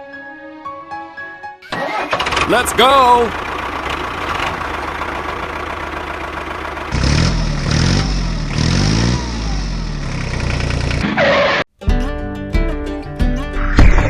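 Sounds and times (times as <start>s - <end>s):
tractor engine revving: 1.7s - 11.7s.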